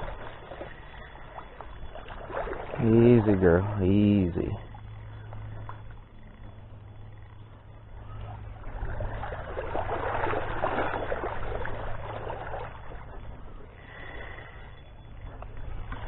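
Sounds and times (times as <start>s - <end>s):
river water splashing and rushing: 0.0s - 3.8s, 8.6s - 14.2s
steady low rumble: 0.0s - 16.0s.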